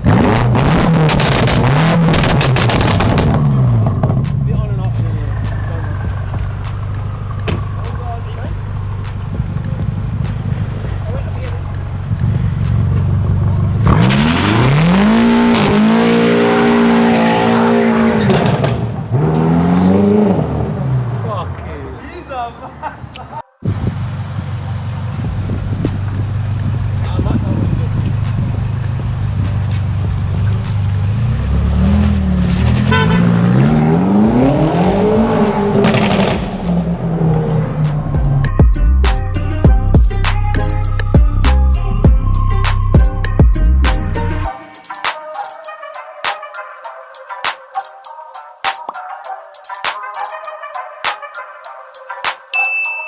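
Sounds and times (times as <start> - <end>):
car engine revving hard: 0.0 - 4.3, 4.9 - 21.6, 23.7 - 38.6
exhaust cracks: 0.0 - 44.5.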